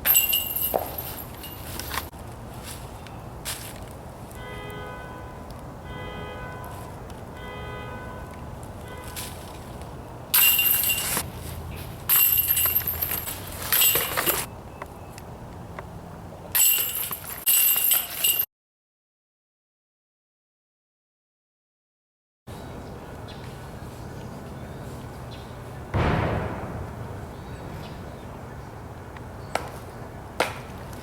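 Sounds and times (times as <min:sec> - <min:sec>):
chains jingling and clanking: 0:00.0 - 0:01.8, 0:10.4 - 0:11.2, 0:12.1 - 0:14.5, 0:16.6 - 0:18.5.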